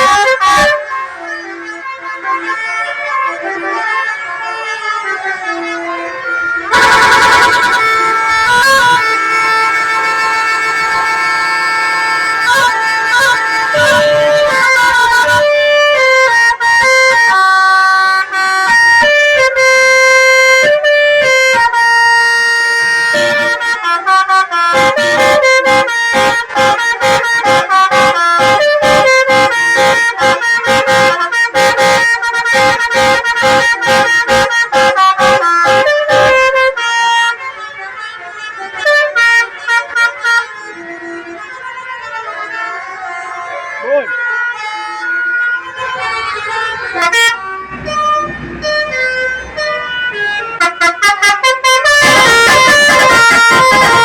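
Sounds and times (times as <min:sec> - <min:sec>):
musical air horn playing a tune: 0:00.0 - 0:00.9, 0:06.7 - 0:37.4, 0:38.8 - 0:40.5, 0:46.9 - 0:49.0, 0:49.6 - 0:54.0.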